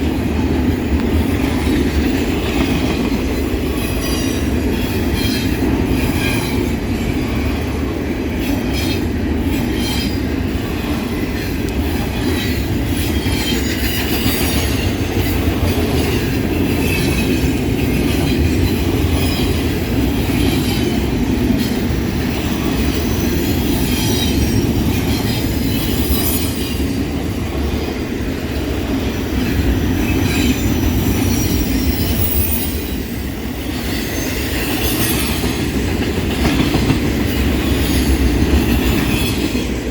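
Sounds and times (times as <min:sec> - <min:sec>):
freight train rumbling on rails: 0:00.0 - 0:39.9
high wheel squeal: 0:29.4 - 0:35.6.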